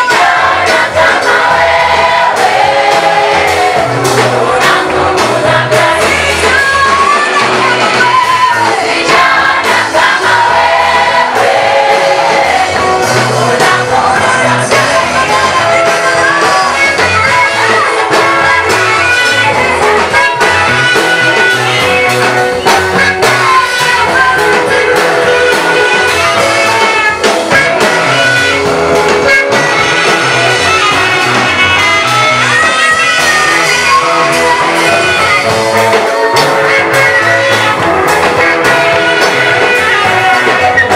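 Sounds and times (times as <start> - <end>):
choir singing worship song: 0.0 - 17.1
band accompaniment with bass: 0.0 - 40.9.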